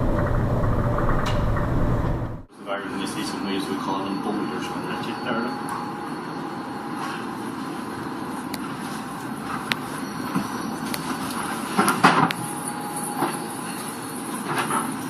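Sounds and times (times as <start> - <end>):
knocks and clatters: 0.0 - 2.5
steady rumbling: 0.0 - 2.5.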